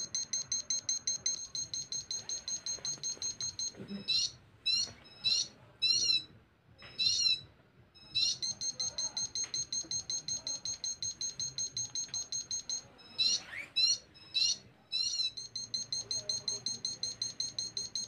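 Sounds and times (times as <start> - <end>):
rapid electronic beeping: 0.0 - 4.4, 8.0 - 18.0.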